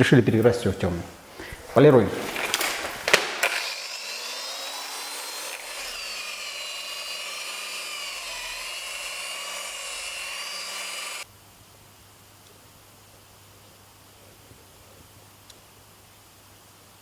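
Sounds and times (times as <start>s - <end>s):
electric polisher whining: 2.2s - 11.2s.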